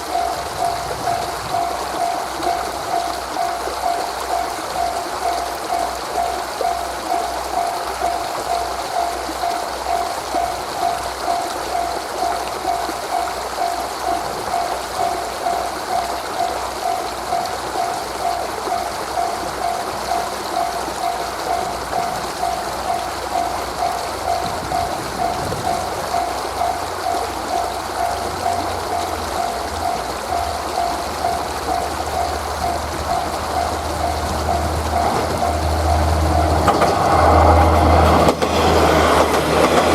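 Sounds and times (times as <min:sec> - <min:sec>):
level-crossing warning bell ringing: 0:00.0 - 0:39.9
steady rushing background: 0:16.9 - 0:39.9.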